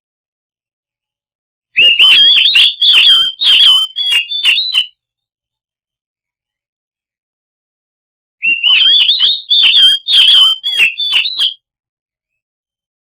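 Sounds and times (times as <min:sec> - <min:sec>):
bird singing whistled phrases: 0:01.8 - 0:04.9, 0:08.4 - 0:11.6.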